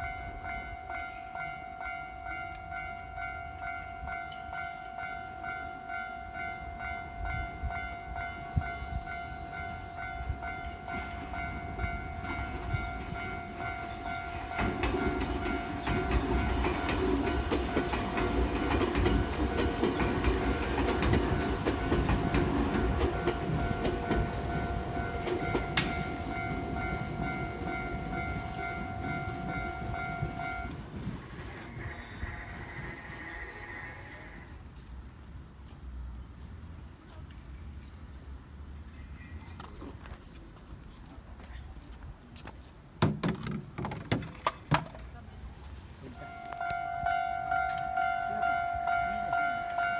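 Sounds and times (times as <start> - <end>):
level-crossing alarm ringing: 0.0 - 31.0, 46.2 - 49.9
train rumble and wheel clatter: 0.0 - 49.9.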